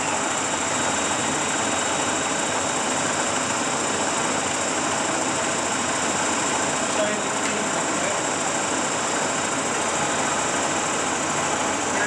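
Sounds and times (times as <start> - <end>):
thin high whine: 0.0 - 3.2
lathe running: 0.0 - 12.0.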